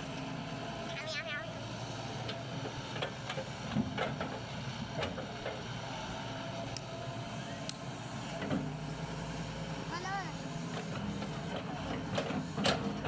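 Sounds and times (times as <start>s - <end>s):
diesel excavator engine running: 0.0s - 13.0s.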